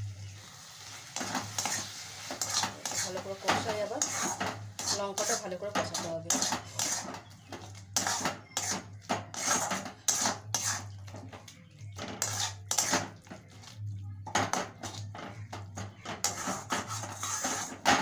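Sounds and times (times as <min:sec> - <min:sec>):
spice paste frying: 0:00.0 - 0:18.0
spatula scraping a pan: 0:01.0 - 0:13.8, 0:14.5 - 0:18.0.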